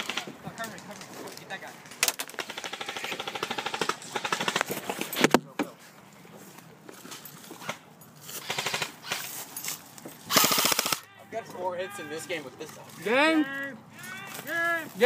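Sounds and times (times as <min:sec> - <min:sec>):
airsoft guns firing full auto: 0:00.0 - 0:00.7, 0:02.0 - 0:04.8, 0:08.3 - 0:09.3, 0:10.3 - 0:11.1.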